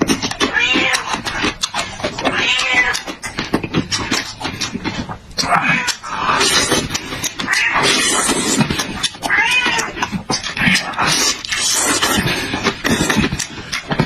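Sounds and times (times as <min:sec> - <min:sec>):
cat yowling: 0:00.5 - 0:01.1, 0:02.3 - 0:03.0, 0:09.2 - 0:10.0.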